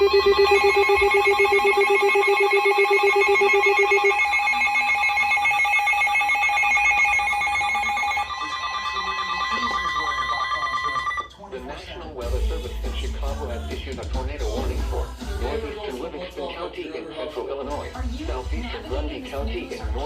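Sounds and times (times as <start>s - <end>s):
pulsing alert tone: 0.0s - 11.2s
steady alert tone: 0.0s - 11.3s.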